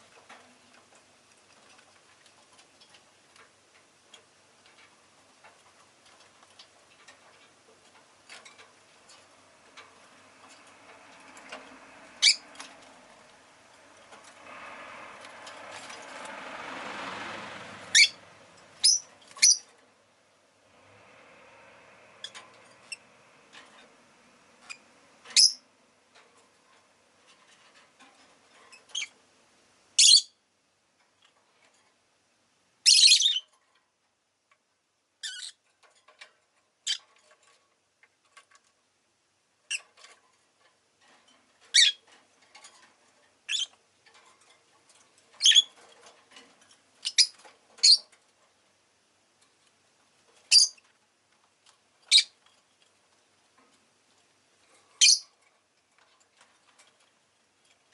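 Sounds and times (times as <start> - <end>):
lovebird chirping and squawking: 12.2 - 12.6, 17.9 - 18.2, 18.8 - 19.7, 24.6 - 25.6, 30.0 - 30.4, 32.8 - 33.5, 35.2 - 35.6, 36.8 - 37.1, 41.7 - 42.0, 43.5 - 43.8, 45.4 - 45.7, 47.0 - 48.1, 50.5 - 50.8, 52.1 - 52.4, 55.0 - 55.3.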